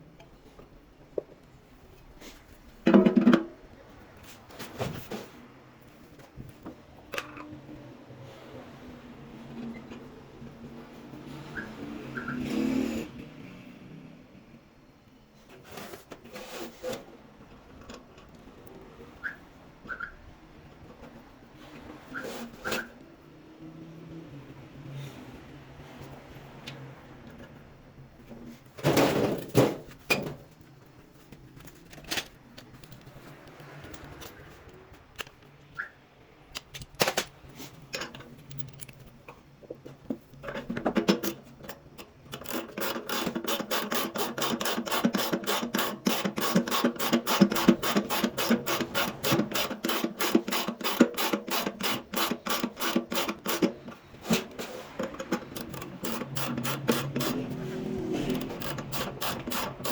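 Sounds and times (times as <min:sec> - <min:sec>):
scattered clicks and knocks: 0:02.8 - 0:03.6, 0:36.5 - 0:59.9
ratchet tool clicking: 0:41.0 - 0:59.9.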